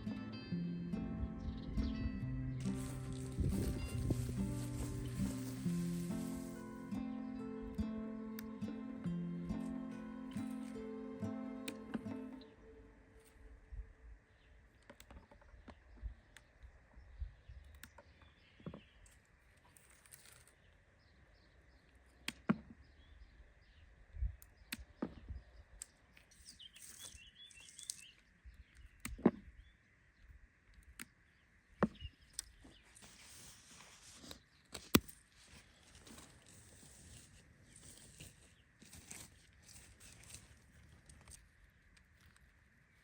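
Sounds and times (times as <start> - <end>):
birds chirping: 0.0 - 13.2.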